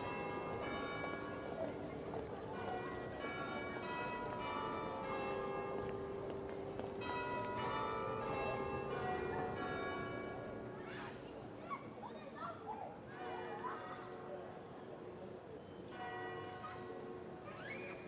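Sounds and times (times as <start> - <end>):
church bells ringing: 0.0 - 1.6, 2.6 - 10.7, 15.9 - 17.4.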